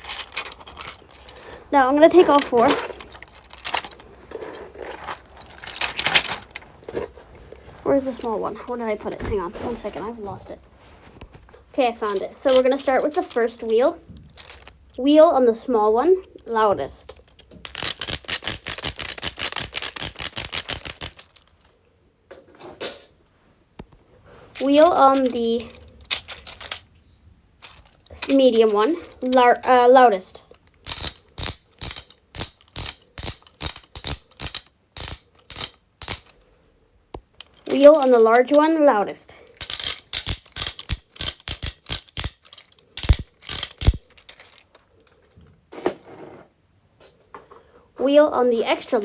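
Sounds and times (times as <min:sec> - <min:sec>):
plastic fidget wheel clicking: 0:17.4 - 0:21.2, 0:30.8 - 0:36.4, 0:39.6 - 0:44.2.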